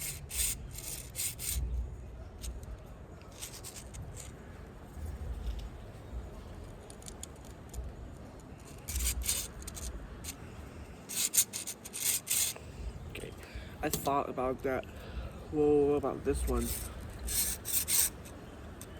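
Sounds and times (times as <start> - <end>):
plastic fidget toy clicking: 0.0 - 1.7, 6.6 - 10.4, 11.1 - 12.6, 16.6 - 18.9.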